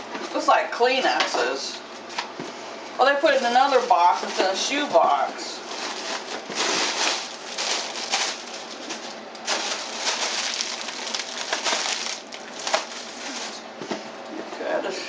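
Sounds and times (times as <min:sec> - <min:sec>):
cardboard and paper rustling: 0:05.6 - 0:14.0.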